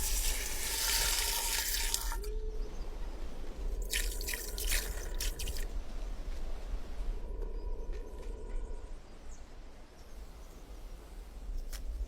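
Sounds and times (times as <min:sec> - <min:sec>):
water splashing and dripping: 0:00.0 - 0:02.3, 0:03.8 - 0:05.7
steady low rumble: 0:02.2 - 0:10.4.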